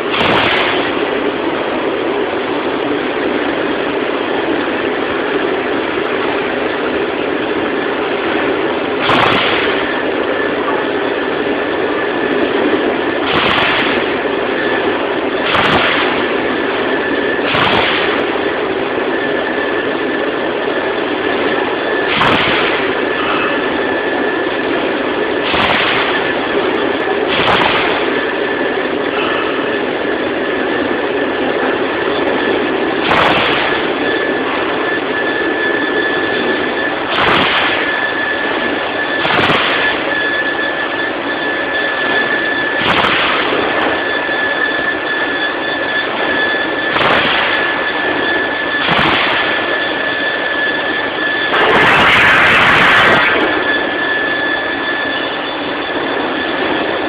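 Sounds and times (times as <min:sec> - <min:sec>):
high steady squeal: 0:00.0 - 0:57.0.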